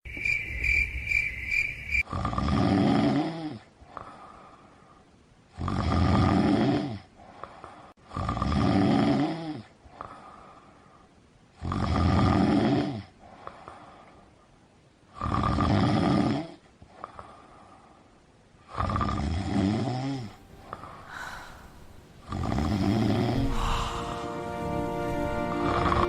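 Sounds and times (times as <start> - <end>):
crickets chirping: 0.1 - 2.1
loud snoring: 2.1 - 3.6, 5.6 - 7.0, 8.1 - 9.6, 11.6 - 13.1, 15.2 - 16.6, 18.7 - 24.2
breath out: 20.6 - 24.4.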